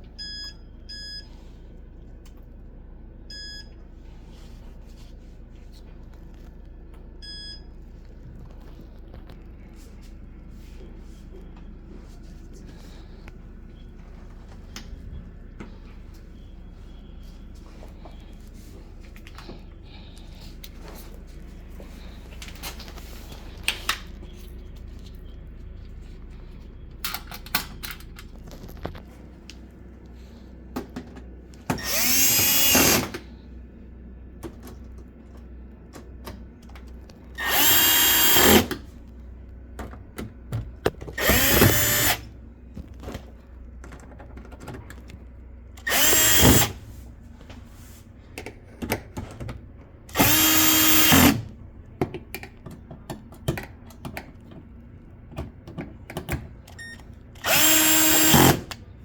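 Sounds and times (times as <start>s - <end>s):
power drill motor whine: 31.7s - 33.2s, 37.4s - 38.8s, 41.1s - 42.3s, 45.8s - 46.8s, 50.1s - 51.5s, 56.8s - 58.8s.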